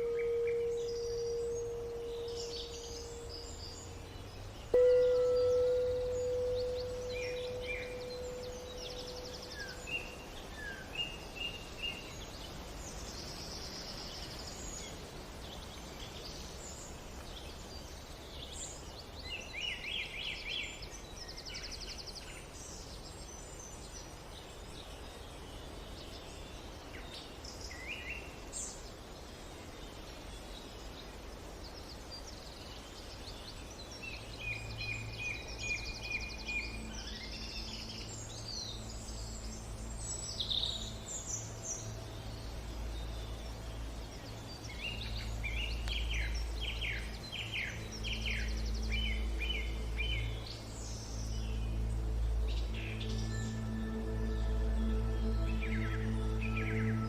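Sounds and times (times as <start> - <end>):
singing bowl tone: 0.0 - 10.2
songbirds chirping: 0.0 - 57.0.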